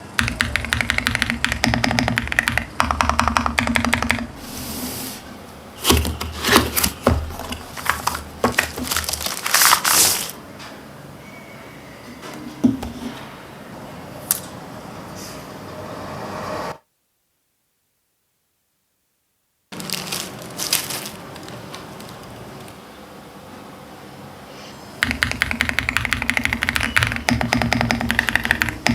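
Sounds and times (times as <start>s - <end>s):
fast typing on mechanical keyboard: 0.2s - 4.3s, 25.0s - 28.9s.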